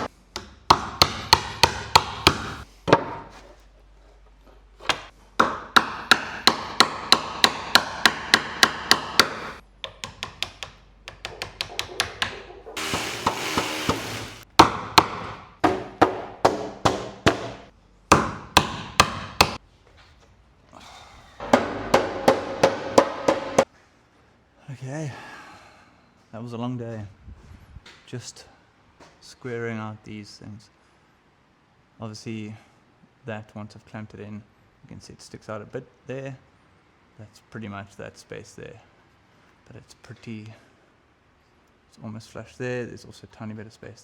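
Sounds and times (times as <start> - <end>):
wood chisel being struck: 0.0 - 3.2, 4.9 - 19.6, 21.4 - 23.6
scraping rasp: 12.8 - 14.4.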